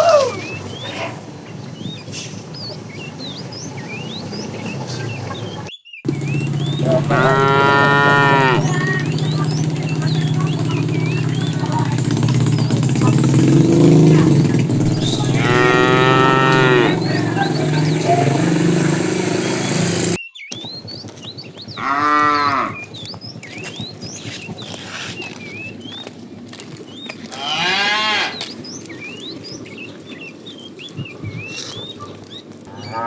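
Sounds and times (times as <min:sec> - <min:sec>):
small birds chirping: 0:00.0 - 0:33.0
low engine hum: 0:03.4 - 0:20.2
cattle mooing: 0:06.1 - 0:20.2, 0:21.8 - 0:22.8, 0:27.3 - 0:28.4, 0:32.7 - 0:33.0.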